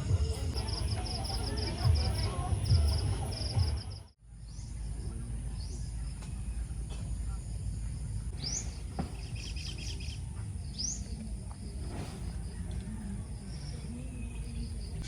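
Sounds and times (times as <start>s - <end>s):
bird calls: 8.3s - 11.3s.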